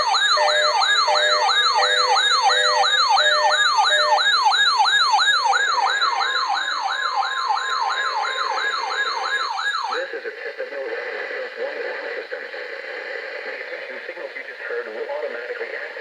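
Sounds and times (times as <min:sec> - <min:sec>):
electronic siren sweeps: 0:00.0 - 0:10.0
steady alarm tone: 0:00.0 - 0:10.0.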